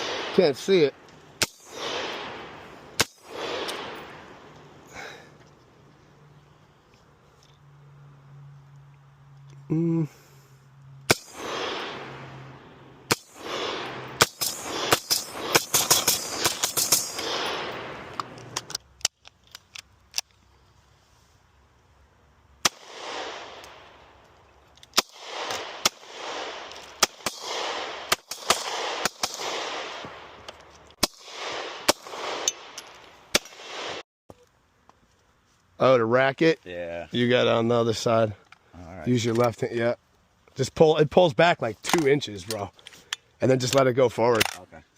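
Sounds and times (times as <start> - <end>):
gunshots with echo: 0.0 - 4.2, 11.1 - 12.4, 13.1 - 18.1, 25.0 - 30.3, 31.0 - 34.0.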